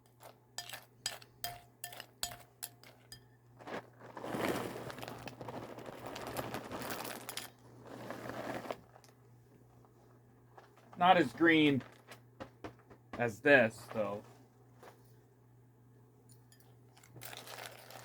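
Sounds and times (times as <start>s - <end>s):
metal spoon clinking on bowl: 0.0s - 3.4s, 16.3s - 16.8s
spoon scraping through cereal: 0.0s - 9.1s, 17.0s - 18.0s.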